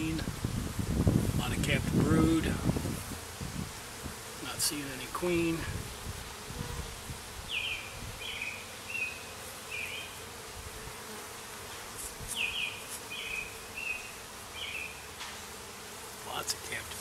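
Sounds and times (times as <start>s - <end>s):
bees buzzing: 0.0s - 17.0s
bird singing: 7.5s - 10.2s, 12.4s - 15.0s.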